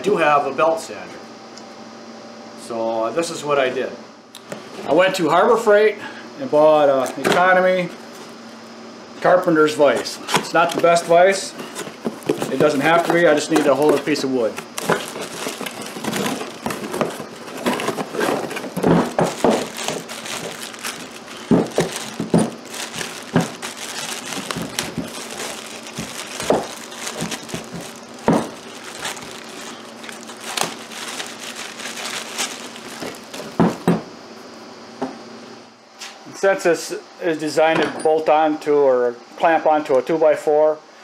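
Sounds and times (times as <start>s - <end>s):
packaging crinkling: 10.4s - 33.9s.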